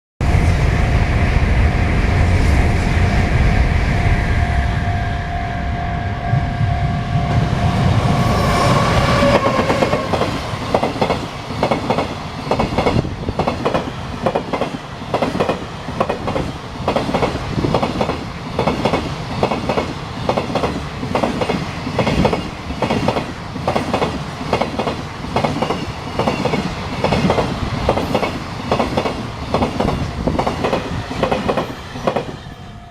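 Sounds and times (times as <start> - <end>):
steady tone: 0.2 - 11.0
freight train wheels clicking: 8.6 - 32.5.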